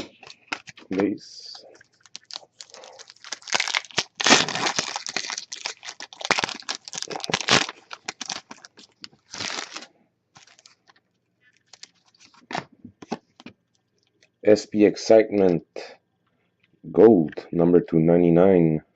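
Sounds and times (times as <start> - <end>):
foil wrapper crinkling and tearing: 1.8 - 12.6.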